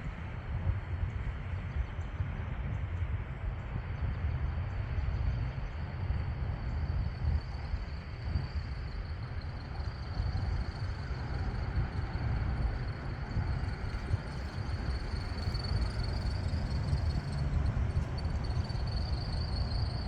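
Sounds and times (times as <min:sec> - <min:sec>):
passing train rumble: 0:00.1 - 0:20.0.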